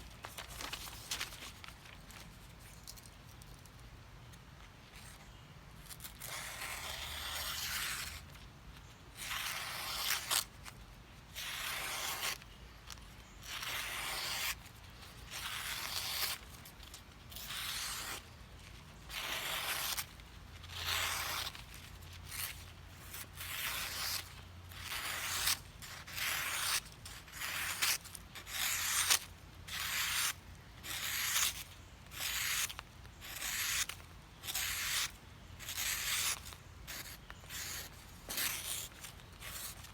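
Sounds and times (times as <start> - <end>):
knife blade scraping: 22.3 - 39.9.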